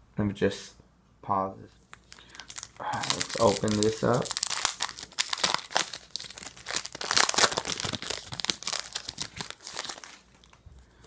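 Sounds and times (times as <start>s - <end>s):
foil pack tearing and crinkling: 2.0s - 10.6s.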